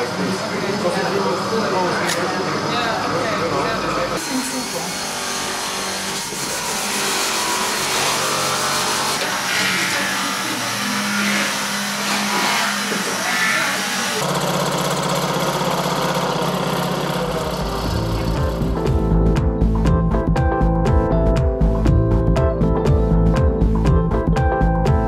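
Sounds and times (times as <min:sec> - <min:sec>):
workshop machine running: 0:00.0 - 0:19.3.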